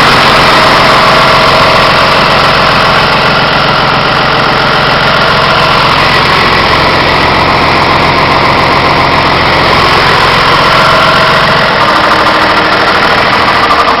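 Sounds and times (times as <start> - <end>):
tractor diesel engine idling: 0.0 - 14.0.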